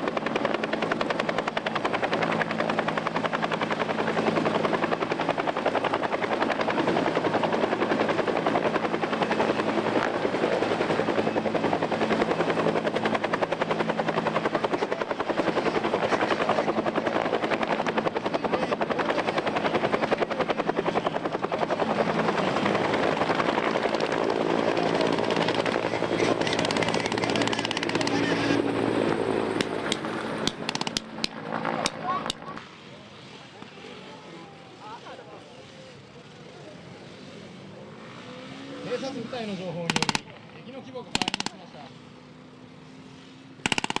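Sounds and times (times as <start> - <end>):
helicopter rotor beating: 0.0 - 44.0.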